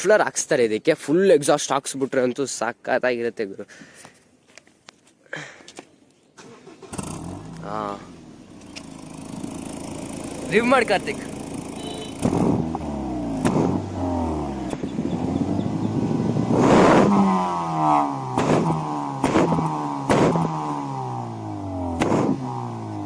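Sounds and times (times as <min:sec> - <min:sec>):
exhaust cracks: 0:06.4 - 0:23.0
car engine revving: 0:06.8 - 0:23.0.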